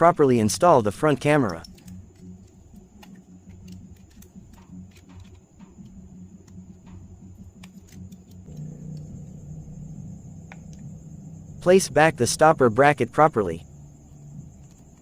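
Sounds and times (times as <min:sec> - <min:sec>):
low steady hum: 0:00.0 - 0:15.0
small parts clicking and tapping: 0:01.2 - 0:09.1.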